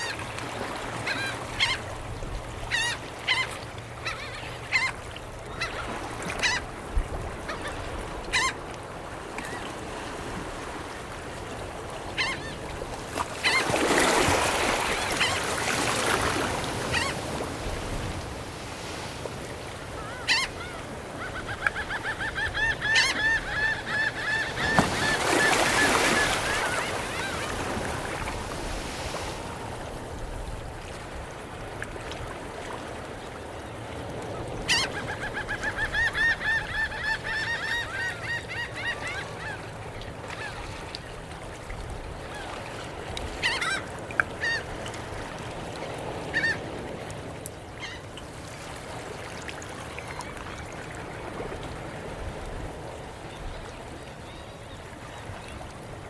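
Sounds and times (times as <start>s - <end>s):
surf and lapping water: 0.0s - 56.0s
seagulls calling: 1.0s - 1.9s, 2.7s - 6.7s, 7.4s - 8.6s, 12.1s - 12.7s, 13.4s - 17.4s, 19.7s - 28.2s, 34.6s - 39.7s, 43.4s - 44.7s, 46.2s - 46.7s.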